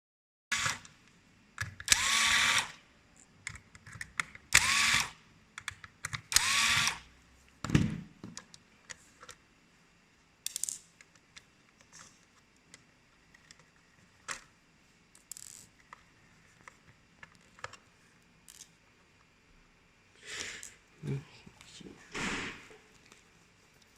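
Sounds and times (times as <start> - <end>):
small electric motor whirring: 0.5 - 0.9, 1.9 - 2.8, 4.5 - 5.2, 6.3 - 7.1
tools clicking and knocking: 3.4 - 4.7.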